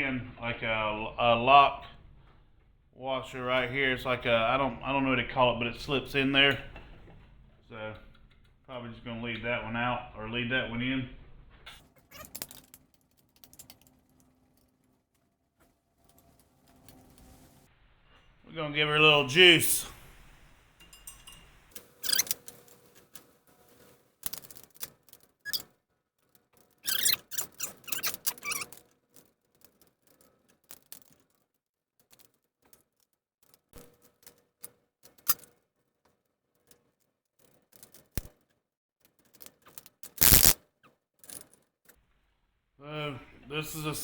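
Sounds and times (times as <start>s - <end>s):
squeaks: 11.7s - 12.7s, 22.0s - 22.4s, 25.4s - 25.7s, 26.8s - 28.8s, 40.2s - 40.6s
metal clanks: 20.8s - 22.2s
wrench clicking on bolts: 22.0s - 22.4s.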